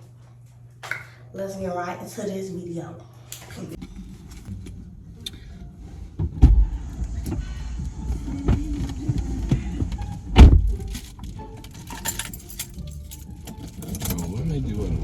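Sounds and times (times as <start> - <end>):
low rumble: 3.8 - 11.5
heavy thumps: 6.0 - 11.3.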